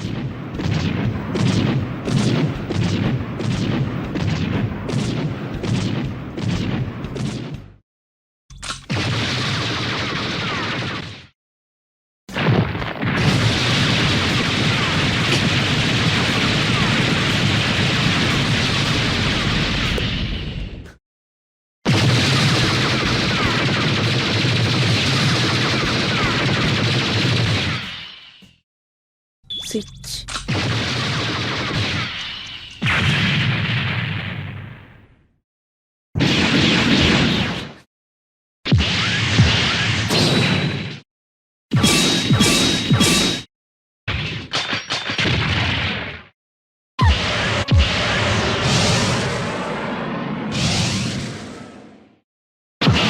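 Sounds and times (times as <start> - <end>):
gunfire-like blasts: 0.0 - 7.6, 12.3 - 20.4, 21.9 - 27.9, 30.5 - 35.0.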